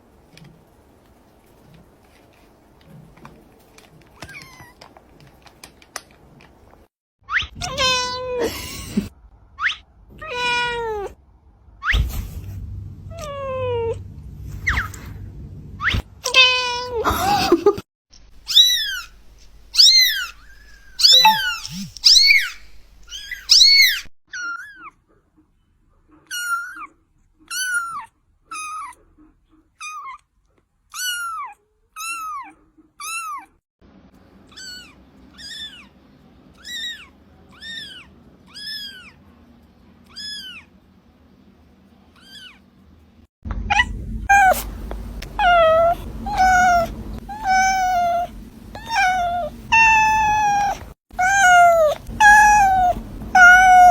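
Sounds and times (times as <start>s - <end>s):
kitten meowing: 7.3s - 8.4s, 18.4s - 24.8s, 36.6s - 39.2s, 43.7s - 53.9s.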